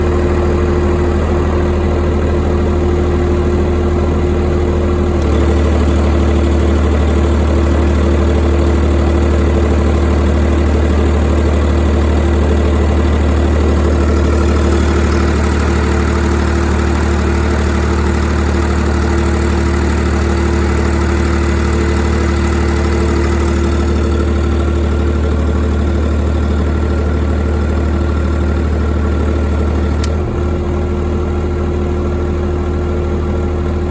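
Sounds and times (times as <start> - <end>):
diesel generator running: 0.0 - 33.9.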